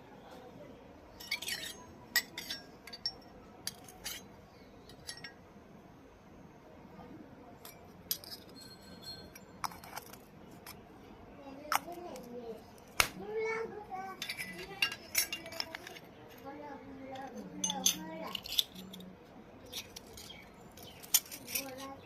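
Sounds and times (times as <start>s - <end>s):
toy pieces clinking: 1.2s - 4.2s, 7.7s - 10.8s, 14.2s - 16.5s, 17.2s - 22.0s.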